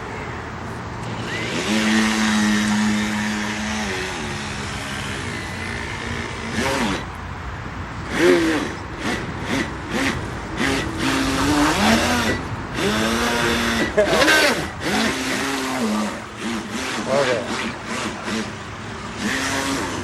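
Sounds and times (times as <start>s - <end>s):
model electric motor whining: 0.0s - 20.0s.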